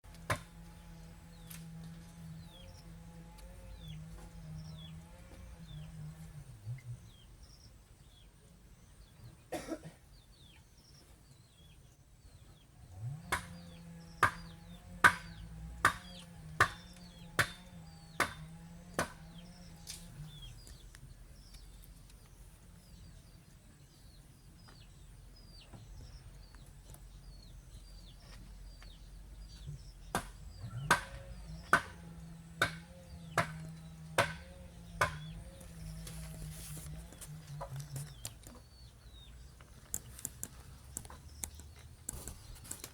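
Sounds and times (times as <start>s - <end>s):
baby chicks peeping: 0.0s - 42.9s
sharp knocks: 0.2s - 0.6s, 13.2s - 19.3s, 30.1s - 35.4s.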